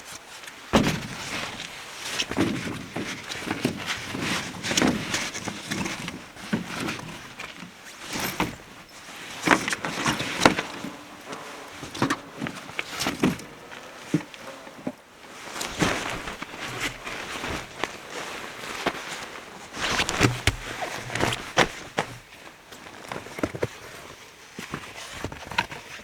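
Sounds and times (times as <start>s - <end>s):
rustling: 6.7s - 23.7s.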